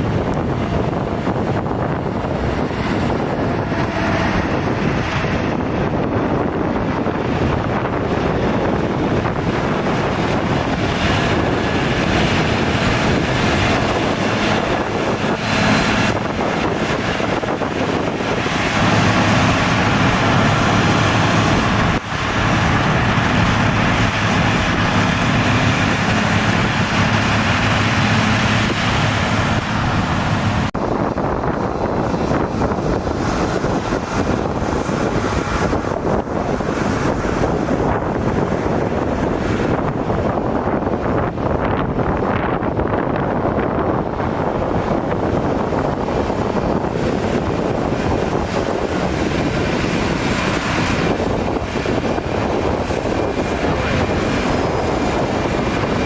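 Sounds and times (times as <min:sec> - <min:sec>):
heavy machine engines running: 0:00.0 - 0:56.0
steady engine hum: 0:00.0 - 0:56.0
wind buffeting microphone: 0:00.0 - 0:56.0.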